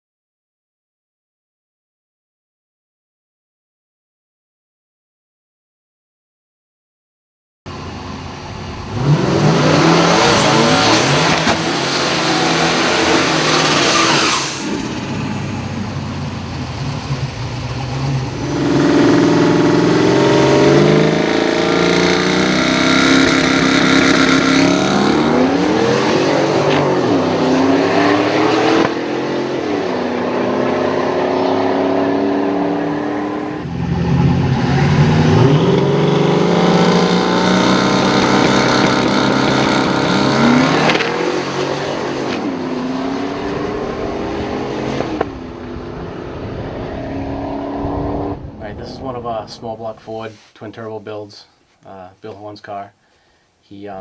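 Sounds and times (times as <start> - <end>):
car engine revving and accelerating: 7.7 - 48.8.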